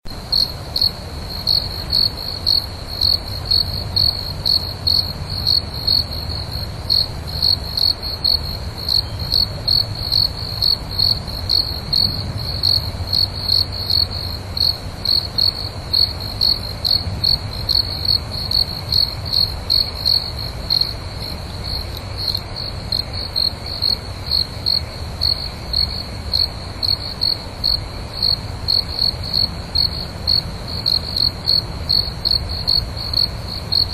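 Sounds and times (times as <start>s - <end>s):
cricket chirping: 0.1s - 33.9s.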